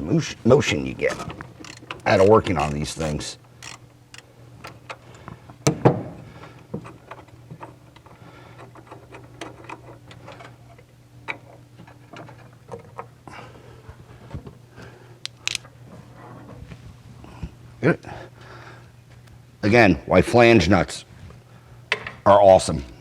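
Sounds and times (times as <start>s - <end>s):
steady low hum: 0.0s - 21.9s
socket ratchet clicking: 1.0s - 5.2s, 15.3s - 15.6s.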